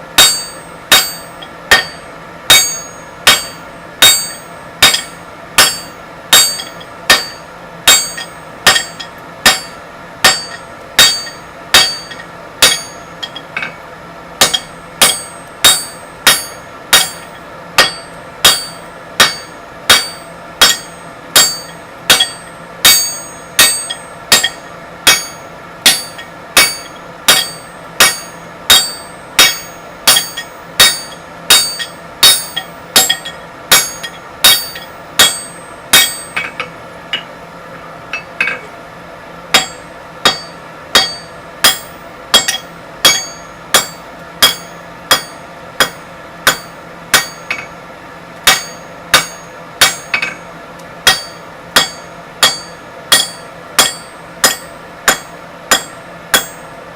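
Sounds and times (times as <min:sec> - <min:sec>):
hammer striking hot steel: 0:00.0 - 0:37.4, 0:38.1 - 0:38.8, 0:39.5 - 0:56.8
anvil ringing: 0:00.2 - 0:13.8, 0:14.4 - 0:37.4, 0:39.5 - 0:47.8, 0:48.4 - 0:56.7.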